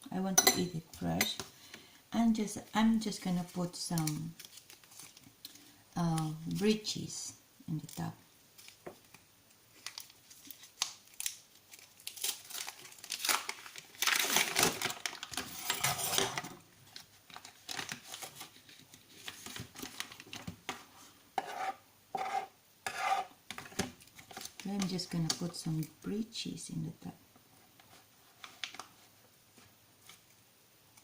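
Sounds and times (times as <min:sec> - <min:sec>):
food packaging crinkling and tearing: 0:03.8 - 0:06.9, 0:07.8 - 0:20.9, 0:23.6 - 0:25.9, 0:27.9 - 0:29.1.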